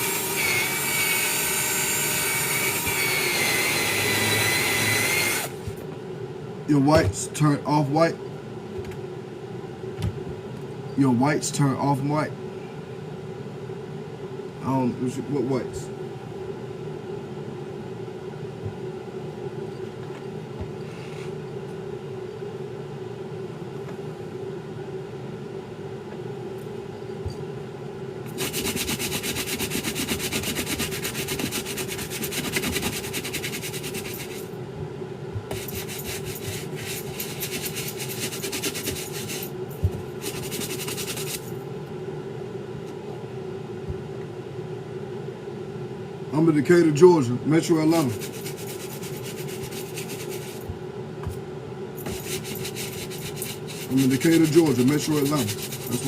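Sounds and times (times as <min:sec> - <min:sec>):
steady low hum: 0:02.3 - 0:56.0
scrubbing a sneaker: 0:28.3 - 0:34.5, 0:35.5 - 0:41.5, 0:48.0 - 0:50.8, 0:52.0 - 0:56.0.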